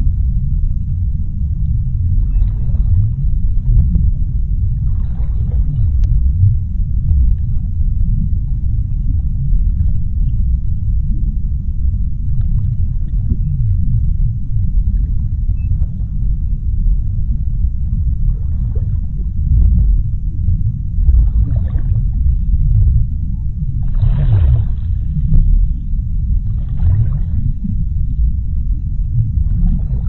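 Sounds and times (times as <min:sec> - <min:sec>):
deep underwater rumble: 0:00.0 - 0:30.0
faint crackles and clicks: 0:00.0 - 0:30.0.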